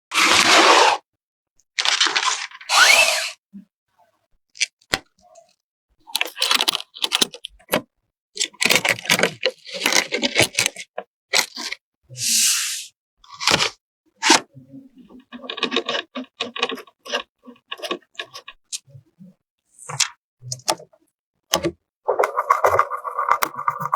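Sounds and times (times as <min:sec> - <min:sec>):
plastic and cardboard rustling: 0:15.2 - 0:18.6.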